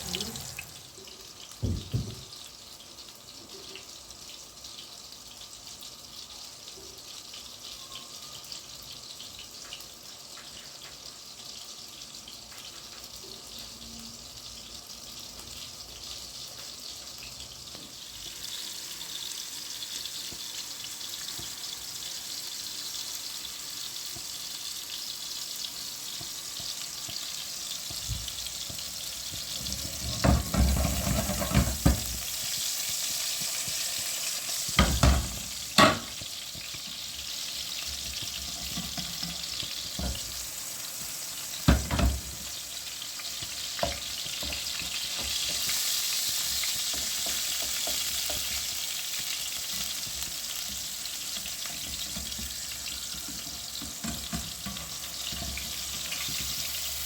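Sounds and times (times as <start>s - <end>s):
food sizzling in a pan: 0.0s - 57.0s.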